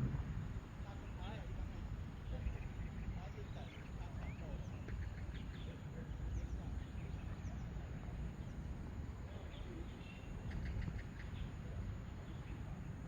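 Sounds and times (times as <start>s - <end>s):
steady low rumble: 0.0s - 4.8s
faint bird chirps: 9.3s - 13.0s.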